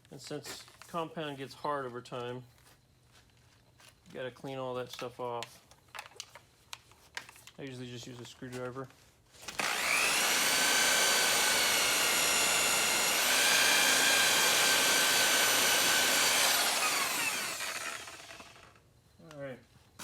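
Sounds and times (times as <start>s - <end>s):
electric buffer whining: 9.5s - 18.8s.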